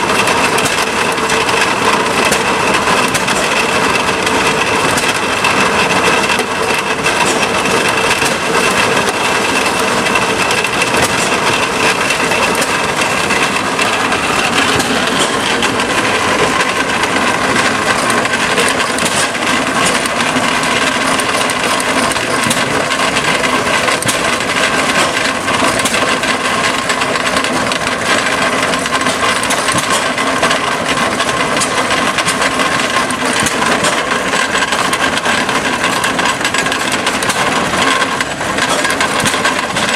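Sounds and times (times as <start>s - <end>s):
machine grinding corn: 0.0s - 39.9s.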